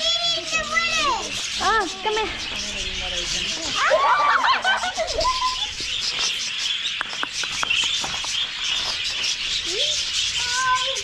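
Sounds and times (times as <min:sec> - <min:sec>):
budgerigars chattering and chirping: 0:00.0 - 0:11.0.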